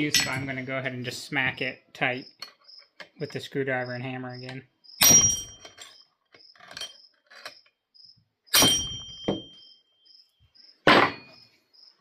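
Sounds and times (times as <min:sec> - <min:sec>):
crickets chirping: 0:00.0 - 0:12.0.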